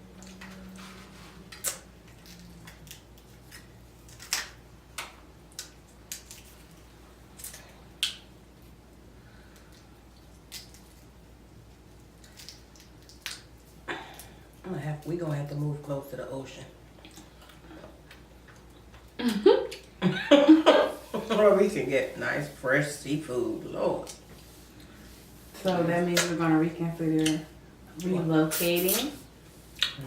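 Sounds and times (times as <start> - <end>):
wet squishing eating: 5.4 - 14.6.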